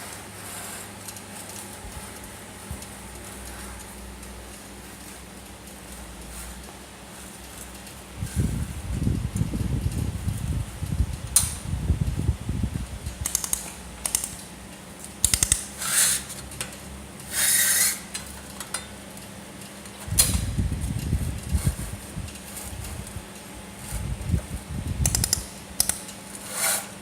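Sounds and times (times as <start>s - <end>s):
low machine hum: 18.1s - 27.0s
handling rumble: 20.0s - 25.2s.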